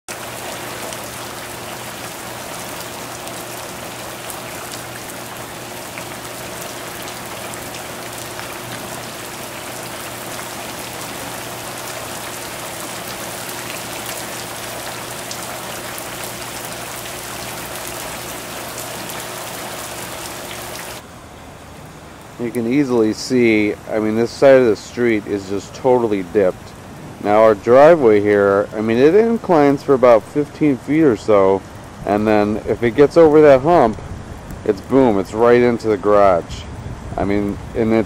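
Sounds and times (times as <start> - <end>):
low steady hum: 0.1 - 38.0
steady rain falling: 0.1 - 38.0.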